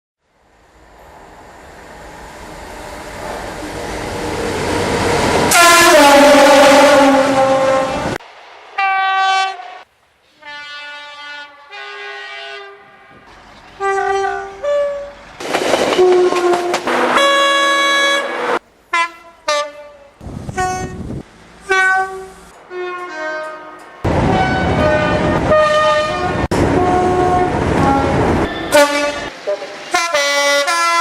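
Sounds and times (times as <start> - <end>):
train rushing past: 0.2 - 10.6, 11.7 - 31.0
train horn blasts: 5.5 - 8.2, 8.8 - 15.2, 15.9 - 31.0
two-tone train horn: 5.5 - 8.2, 8.8 - 15.2, 15.9 - 31.0.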